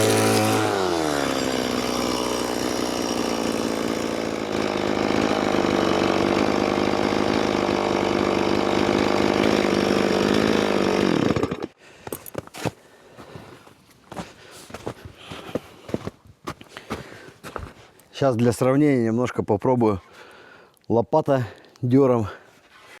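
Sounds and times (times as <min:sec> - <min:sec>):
chainsaw running at high revs: 0:00.0 - 0:12.3.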